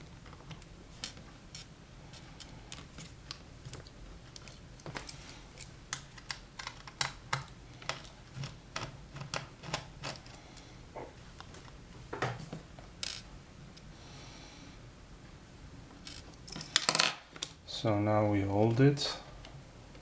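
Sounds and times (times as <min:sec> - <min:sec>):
plastic parts clicking and tapping: 0:01.6 - 0:10.3.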